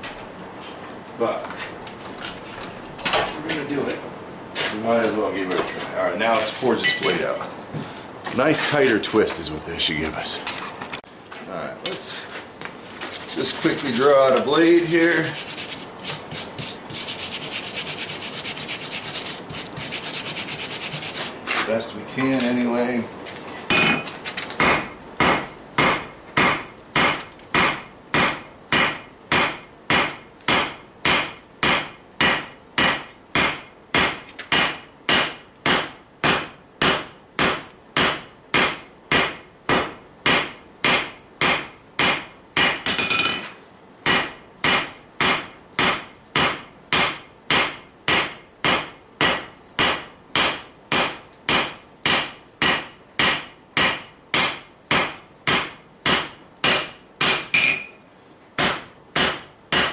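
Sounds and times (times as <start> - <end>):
hammer striking hot steel on anvil: 24.6 - 58.0, 58.6 - 59.9.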